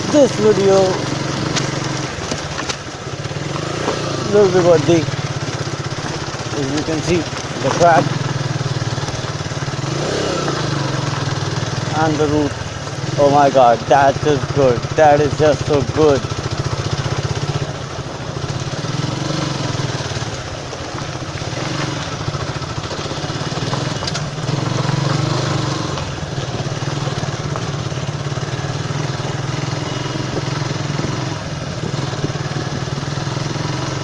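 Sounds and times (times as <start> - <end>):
motorcycle engine running: 0.0 - 34.0.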